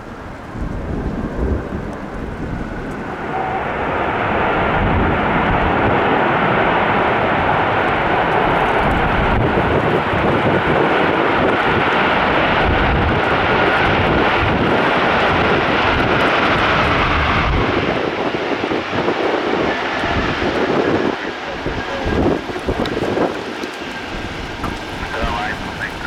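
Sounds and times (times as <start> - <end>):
jet engines running: 0.0 - 26.0.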